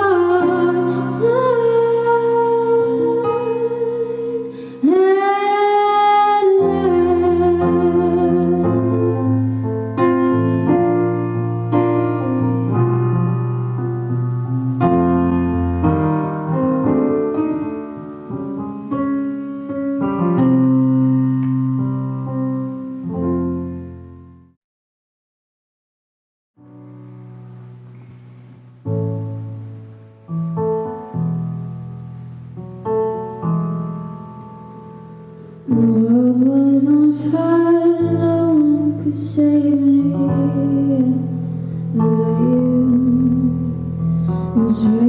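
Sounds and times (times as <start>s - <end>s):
woman singing: 0.0s - 9.3s, 35.7s - 43.8s, 44.5s - 45.0s
electric piano chords: 0.0s - 24.6s, 26.6s - 45.0s.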